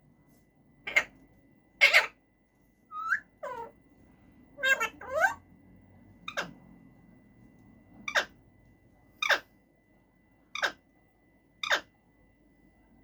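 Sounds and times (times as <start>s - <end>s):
parakeet sharp calls: 0.9s - 1.2s, 1.8s - 2.2s, 2.9s - 3.7s, 4.6s - 5.4s, 6.2s - 6.6s, 8.0s - 8.4s, 9.2s - 9.5s, 10.5s - 10.9s, 11.6s - 11.9s.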